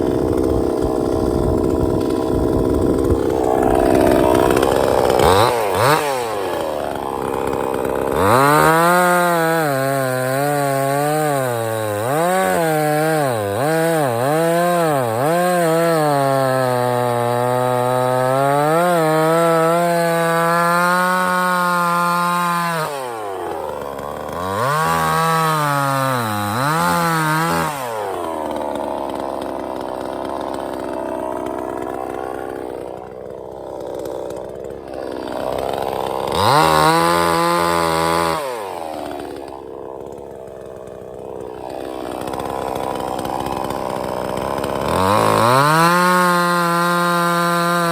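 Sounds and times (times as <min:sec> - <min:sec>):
chainsaw cutting wood: 0:00.0 - 0:47.9.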